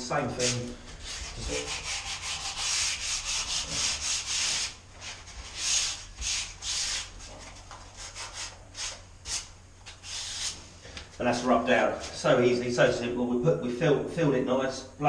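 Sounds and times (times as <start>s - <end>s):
sandpaper scratching on wood: 0.4s - 7.4s, 8.0s - 10.6s.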